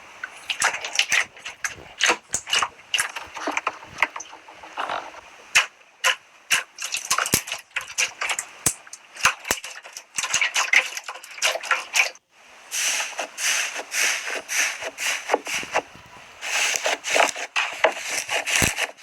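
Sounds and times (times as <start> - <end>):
slime squelching and popping: 0.3 - 12.1.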